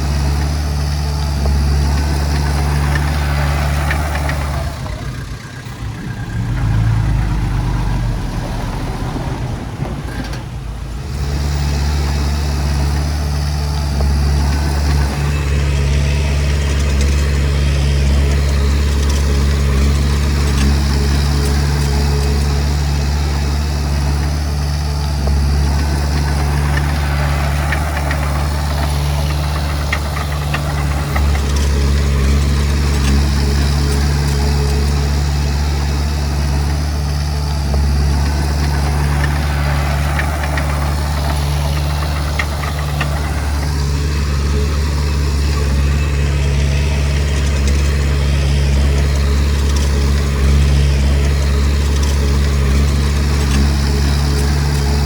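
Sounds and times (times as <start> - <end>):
bulldozer diesel engine droning: 0.0 - 55.0
higher clattering noise: 23.8 - 55.0.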